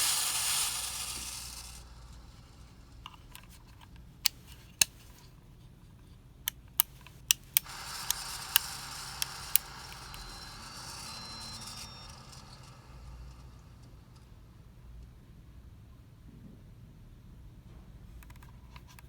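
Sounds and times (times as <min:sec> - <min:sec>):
ceiling fan grinding rush: 0:00.0 - 0:03.6, 0:07.2 - 0:15.0.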